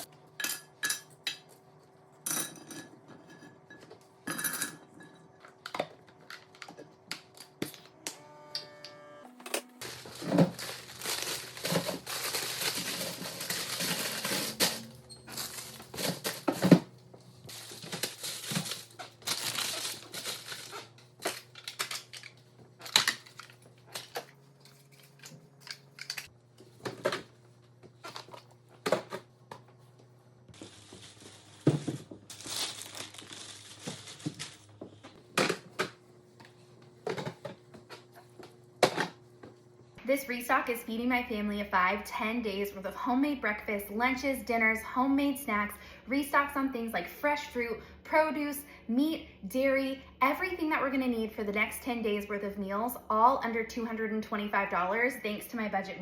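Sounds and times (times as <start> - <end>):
packaging crinkling and rustling: 9.8 - 16.8, 17.4 - 26.3, 30.6 - 35.0
food items knocking on shelves: 30.6 - 32.3.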